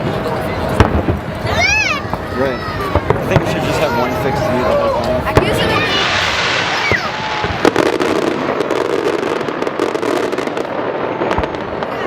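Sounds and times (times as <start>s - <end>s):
firework bang: 0.0s - 12.0s
fireworks crackling: 0.0s - 12.0s
firework pops: 0.7s - 3.8s.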